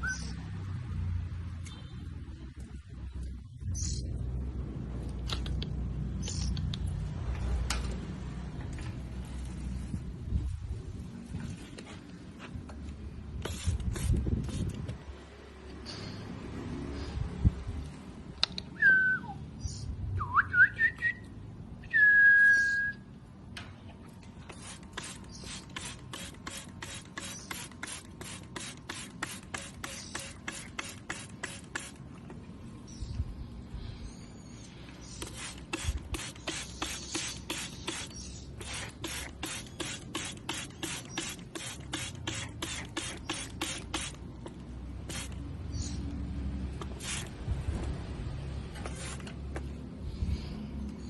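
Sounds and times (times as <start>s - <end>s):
spray bottle squirts: 6.2s - 6.6s, 13.4s - 15.0s, 24.5s - 32.1s, 35.1s - 45.4s, 46.8s - 47.4s, 48.8s - 49.5s.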